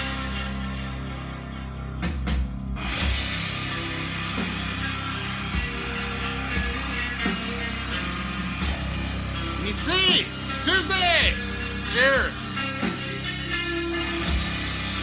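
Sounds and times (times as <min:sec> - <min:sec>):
rock music from vinyl record: 0:00.0 - 0:15.0.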